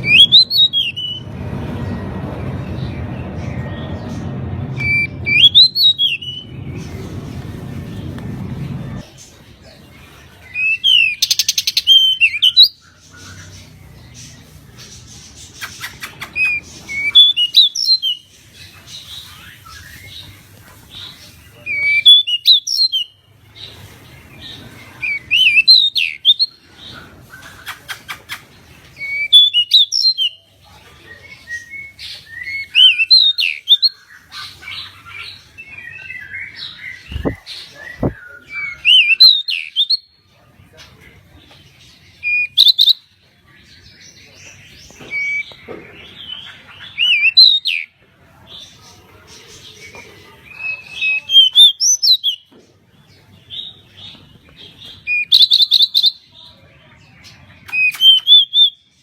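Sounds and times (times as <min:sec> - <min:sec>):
bird singing sweeping chirps: 0:00.0 - 0:08.0, 0:31.4 - 0:40.0
soft bird chatter: 0:00.0 - 0:59.0
low thumps: 0:37.1 - 0:37.4.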